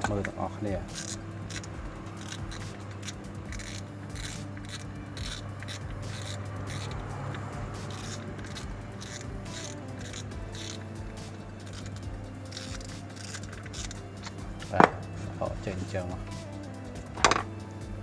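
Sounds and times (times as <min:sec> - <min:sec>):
fishing reel parts clicking and scraping: 0:00.1 - 0:14.9.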